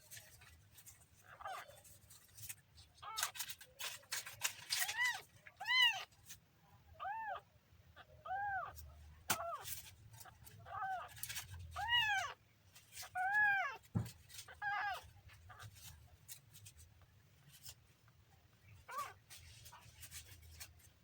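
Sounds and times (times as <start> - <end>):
kitten meowing: 10.6 - 12.4.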